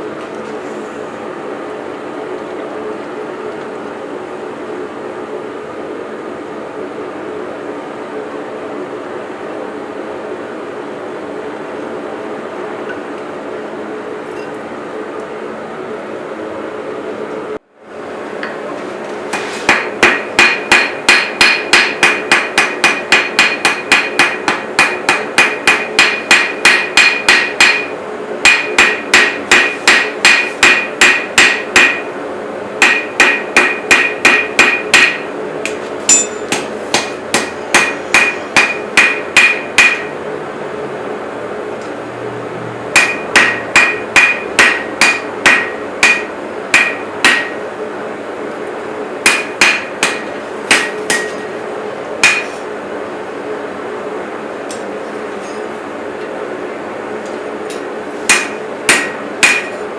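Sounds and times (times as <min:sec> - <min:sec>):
steady hum: 0:00.0 - 0:59.9
hammer ringing on anvil: 0:19.7 - 0:32.1, 0:32.8 - 0:35.3, 0:36.1 - 0:40.1, 0:43.0 - 0:47.6, 0:49.2 - 0:51.6, 0:52.2 - 0:52.6, 0:58.3 - 0:59.8.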